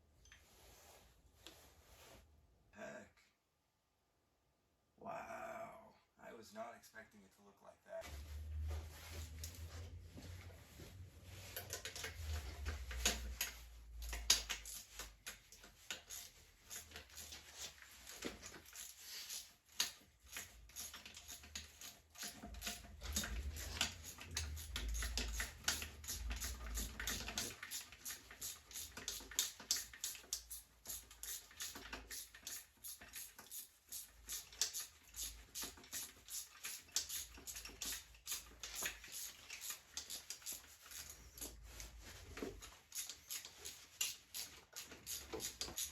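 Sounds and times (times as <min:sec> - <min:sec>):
metallic clicks of hand tools: 0:11.5 - 0:41.5, 0:42.6 - 0:45.9.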